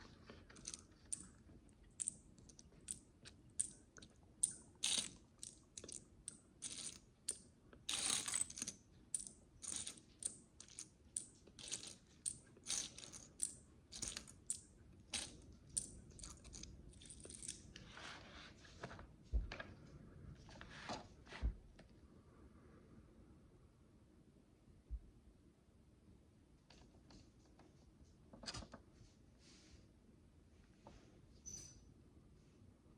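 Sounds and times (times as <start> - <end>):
plastic blocks clicking and rattling: 4.4 - 17.6.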